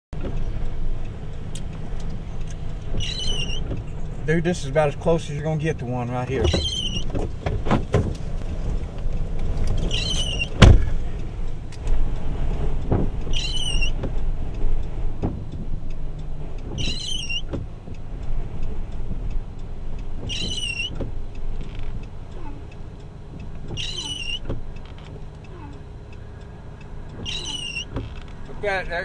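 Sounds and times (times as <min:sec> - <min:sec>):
vehicle engine and road noise: 0:00.1 - 0:29.0
high wavering beep: 0:13.4 - 0:13.9.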